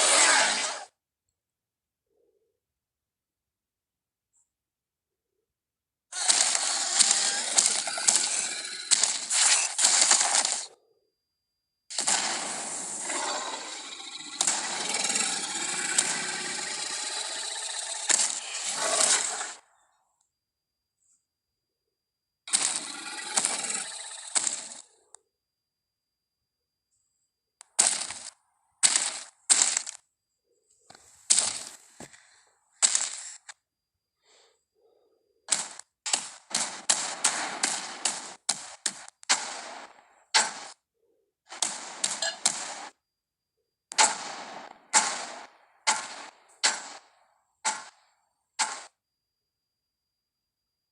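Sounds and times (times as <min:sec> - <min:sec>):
sharp clicks: 0:06.2 - 0:10.8, 0:13.8 - 0:19.3, 0:22.5 - 0:24.9, 0:27.6 - 0:30.1, 0:35.5 - 0:39.5.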